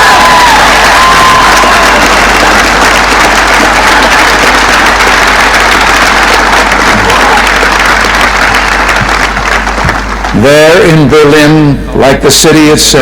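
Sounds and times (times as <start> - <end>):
crowd applauding and cheering: 0.0 - 11.4.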